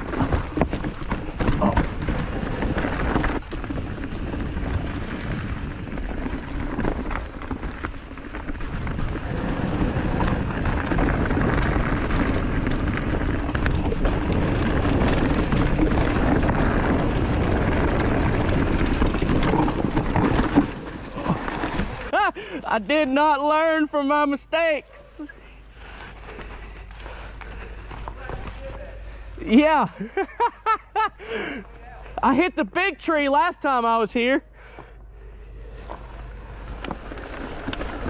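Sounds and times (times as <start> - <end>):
bike knocks and rattles: 0.0 - 22.3, 26.4 - 29.0, 36.7 - 38.0
tyres rumbling over rock: 0.0 - 23.2, 35.7 - 38.0.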